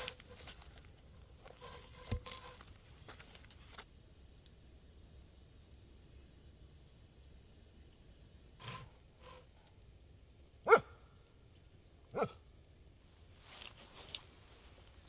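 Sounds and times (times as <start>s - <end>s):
dog barking: 10.6s - 11.0s, 12.1s - 12.4s.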